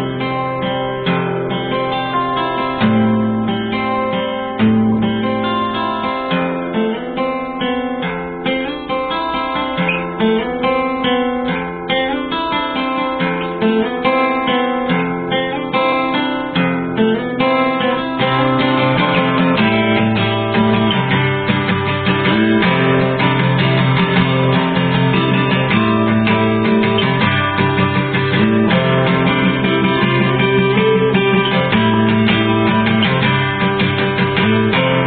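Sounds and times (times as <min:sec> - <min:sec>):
acoustic guitar music: 0:00.0 - 0:35.0.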